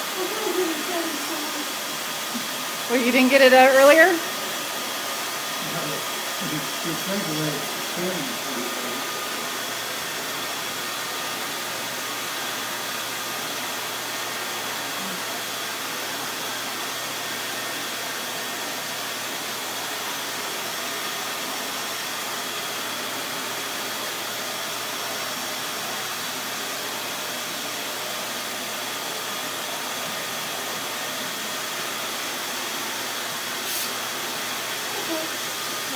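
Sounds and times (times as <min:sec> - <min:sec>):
vacuum cleaner running: 0:00.0 - 0:35.9.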